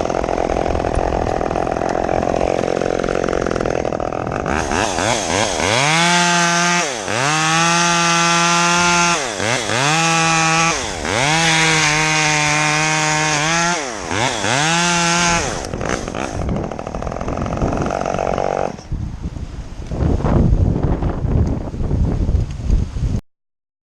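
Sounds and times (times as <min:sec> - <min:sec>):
chainsaw revving: 0:00.0 - 0:18.9.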